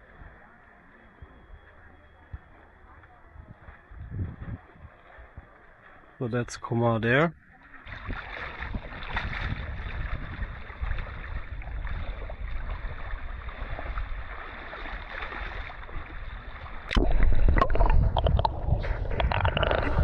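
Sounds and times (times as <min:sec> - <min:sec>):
small waves washing: 0:00.0 - 0:20.0
wind: 0:00.0 - 0:20.0
loud low rumble: 0:16.9 - 0:20.0.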